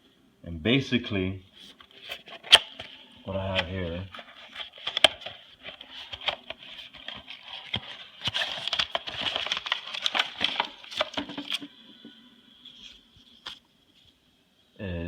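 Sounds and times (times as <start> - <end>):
plastic crinkling with clicks: 3.6 - 11.7.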